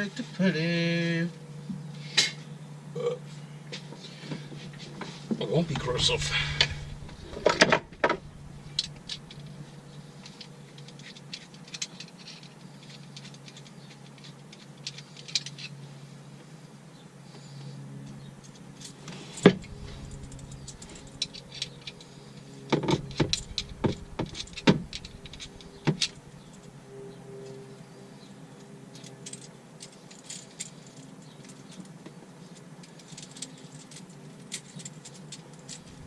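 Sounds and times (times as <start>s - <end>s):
faint steady hum: 0.0s - 36.0s
tools and parts clicking and knocking: 10.2s - 15.8s, 28.9s - 36.0s.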